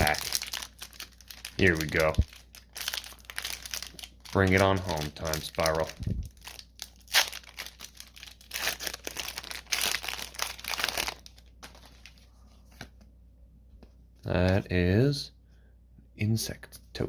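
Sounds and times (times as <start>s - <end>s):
wrapper tearing and crinkling: 0.0s - 12.2s
faint handling sounds: 10.8s - 14.8s.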